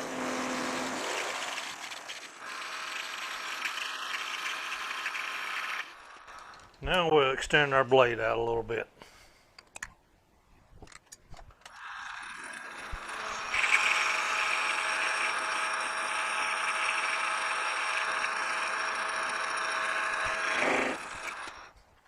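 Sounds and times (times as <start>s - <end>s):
lathe tool screeching on metal: 11.8s - 19.6s.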